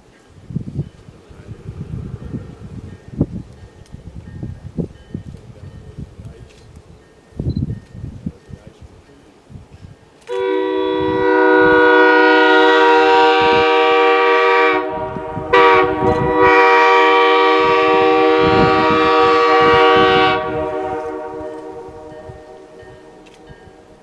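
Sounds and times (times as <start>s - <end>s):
steam locomotive chime whistle: 10.2s - 24.0s.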